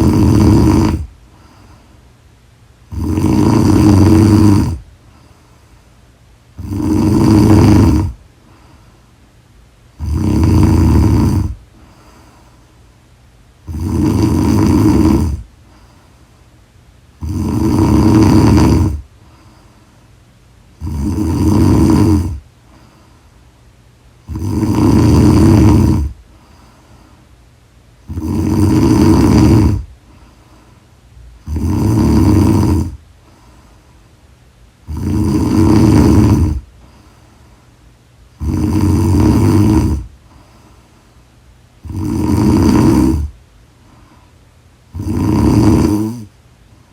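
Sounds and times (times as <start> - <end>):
woman snoring loudly: 0.0 - 1.1, 2.9 - 4.8, 6.6 - 8.2, 10.0 - 11.6, 13.6 - 15.5, 17.2 - 19.1, 20.8 - 22.4, 24.2 - 26.2, 28.0 - 29.9, 31.4 - 33.0, 34.8 - 36.7, 38.4 - 40.1, 41.8 - 43.4, 44.9 - 46.3
quiet breaths: 0.0 - 46.9.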